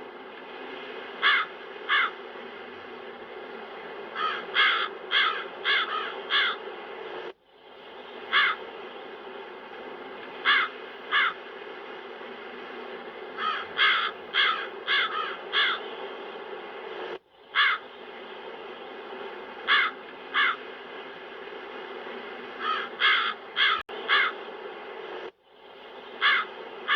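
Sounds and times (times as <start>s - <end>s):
steady wind: 0.0s - 26.9s
crows cawing: 1.2s - 2.2s, 4.1s - 6.6s, 8.3s - 8.7s, 10.4s - 11.4s, 13.4s - 15.8s, 17.5s - 17.9s, 19.6s - 20.6s, 22.6s - 24.4s, 26.2s - 26.9s.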